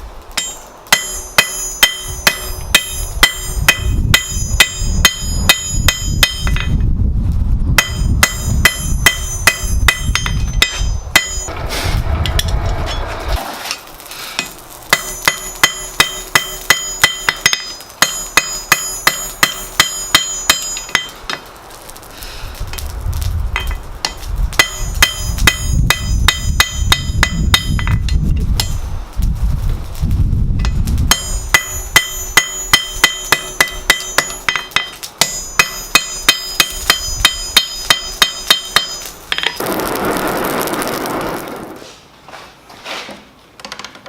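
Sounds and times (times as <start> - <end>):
hammer striking steel on anvil: 0.4 - 6.8, 7.8 - 11.6, 14.4 - 21.5, 23.5 - 28.8, 30.6 - 39.6
low rumble: 3.4 - 13.7, 22.5 - 31.6, 39.6 - 42.0.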